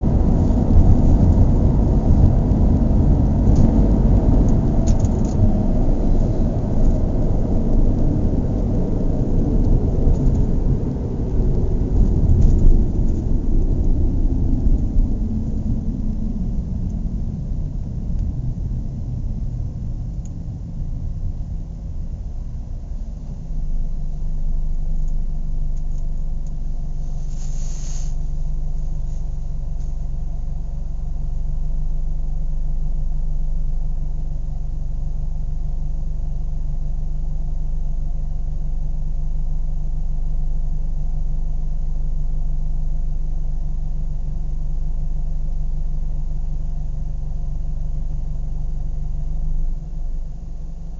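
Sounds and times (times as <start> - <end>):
car engine idling: 0.0 - 50.9
brief high hiss: 27.0 - 28.4.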